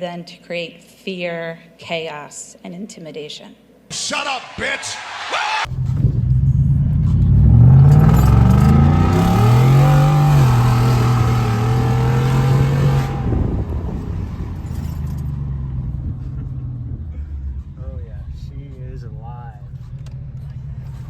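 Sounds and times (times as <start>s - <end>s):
car engine idling: 5.7s - 21.0s.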